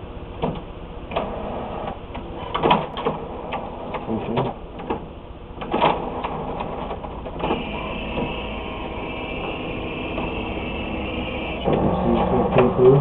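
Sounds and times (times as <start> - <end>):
printer mechanical whir: 0.4 - 13.0.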